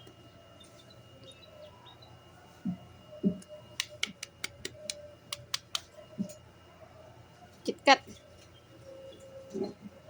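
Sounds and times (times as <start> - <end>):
sharp clicks: 3.8 - 5.9.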